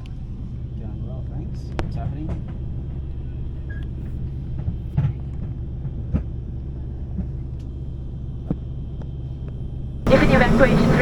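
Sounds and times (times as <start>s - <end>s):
propeller plane cabin drone: 2.4s - 11.0s.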